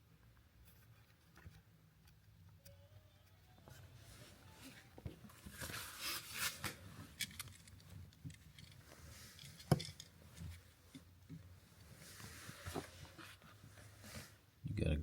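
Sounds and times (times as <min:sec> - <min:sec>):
rustling handling noises: 0:03.6 - 0:14.5.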